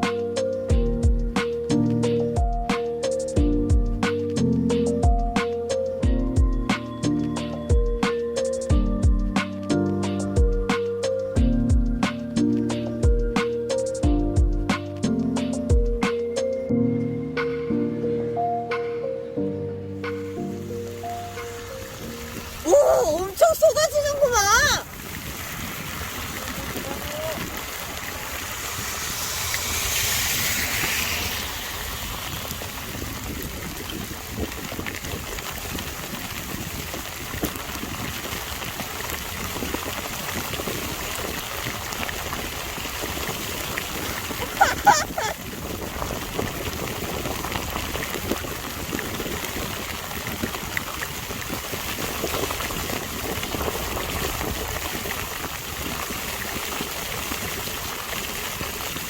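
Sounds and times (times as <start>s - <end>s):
heavy rain pouring: 20.0s - 59.0s.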